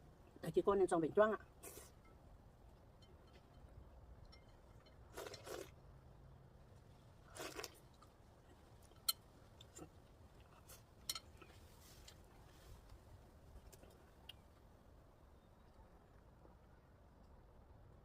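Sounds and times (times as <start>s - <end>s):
person chewing crunchy food: 5.1s - 5.8s, 7.3s - 8.1s.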